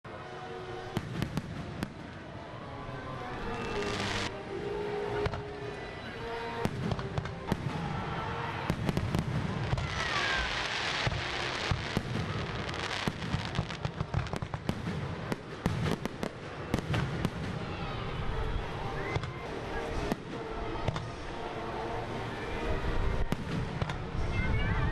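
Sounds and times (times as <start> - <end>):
fireworks banging and crackling: 0.9 - 2.3, 3.5 - 4.3, 6.6 - 18.0, 19.0 - 21.2, 23.2 - 24.8.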